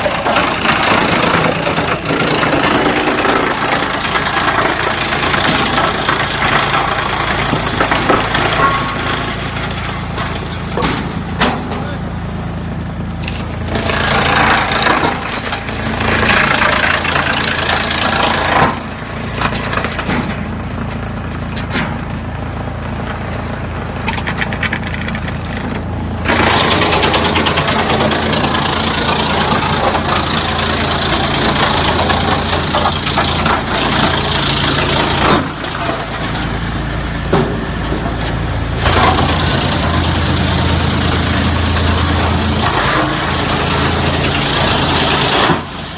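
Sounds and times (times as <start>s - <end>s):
wood chipper humming: 0.0s - 45.9s
logs being chipped: 24.1s - 36.7s.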